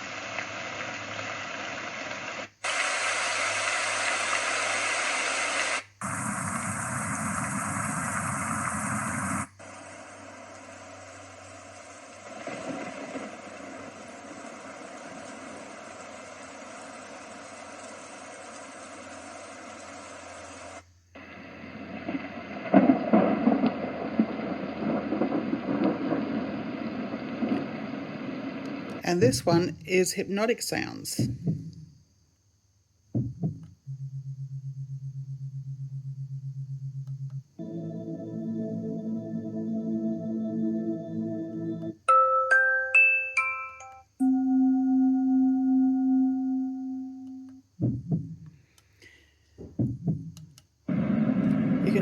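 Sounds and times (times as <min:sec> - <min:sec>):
recorded rain hiss: 0:00.0 - 0:33.2, 0:35.2 - 0:52.0
thunder rumbles: 0:06.0 - 0:18.4, 0:21.2 - 0:29.9, 0:50.9 - 0:52.0.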